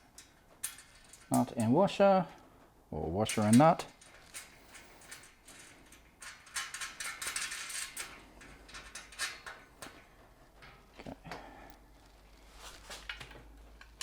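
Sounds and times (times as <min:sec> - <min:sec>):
rustling scrape: 0:11.9 - 0:14.0.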